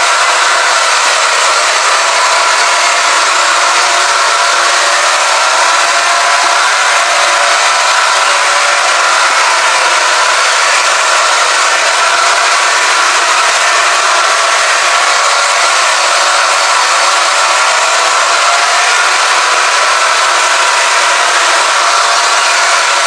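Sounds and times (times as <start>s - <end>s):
emergency alert alarm buzzing tone: 0.6s - 2.3s.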